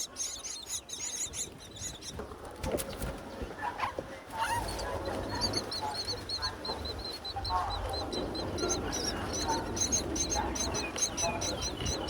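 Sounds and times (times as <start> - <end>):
harsh low bird calls: 0.0 - 2.2
chicks cheeping: 0.0 - 3.4, 4.4 - 12.0.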